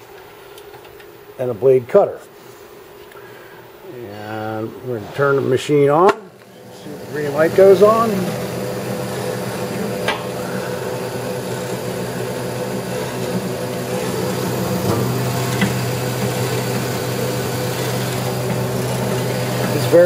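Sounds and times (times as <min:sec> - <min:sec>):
band saw motor humming: 0:06.3 - 0:20.0.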